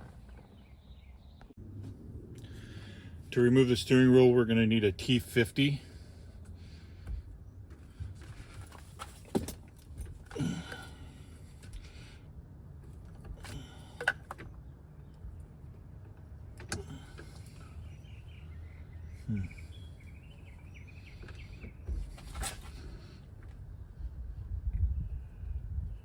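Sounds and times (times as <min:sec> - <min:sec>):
birds chirping faintly: 0:13.8 - 0:24.0.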